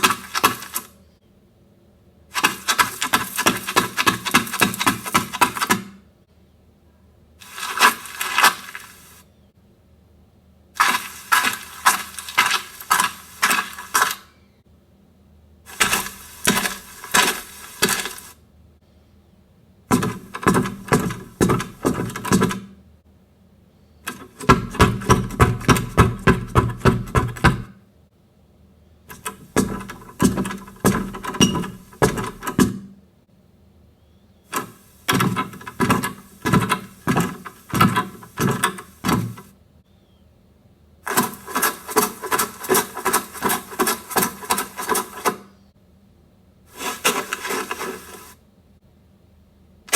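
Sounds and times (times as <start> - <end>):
rapid clicking and clattering: 29.1 - 32.8, 41.1 - 45.5.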